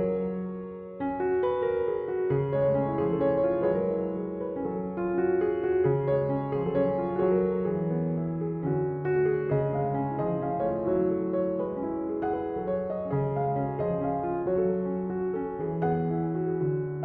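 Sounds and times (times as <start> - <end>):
instrumental piano music: 0.0 - 17.0.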